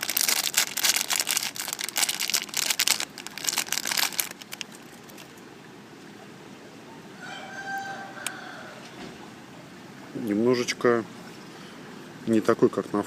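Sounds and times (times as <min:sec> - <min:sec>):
plastic bag crinkling: 0:00.0 - 0:05.4.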